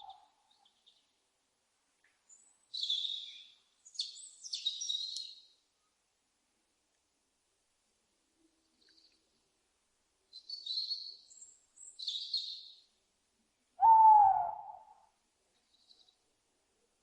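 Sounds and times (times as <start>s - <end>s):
owl call: 0.0s - 0.4s, 13.8s - 15.1s
small birds chirping: 2.2s - 5.6s, 8.6s - 9.4s, 10.3s - 12.9s, 15.6s - 16.3s.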